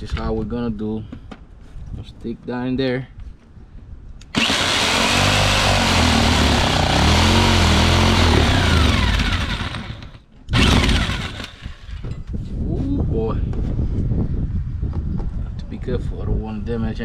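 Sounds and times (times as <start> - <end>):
power saw cutting panel: 4.3 - 12.0.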